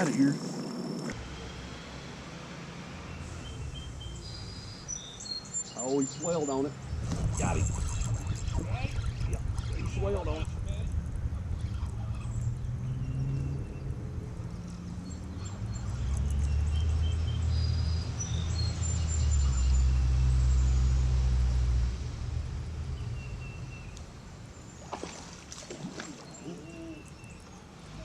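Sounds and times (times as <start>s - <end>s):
birds chirping: 0.0s - 21.6s, 22.5s - 28.0s
low rumble: 6.8s - 15.0s.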